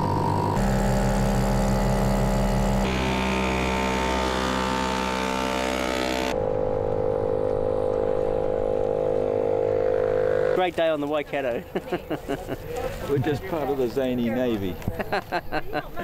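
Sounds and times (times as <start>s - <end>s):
outboard motors running: 0.0s - 11.8s.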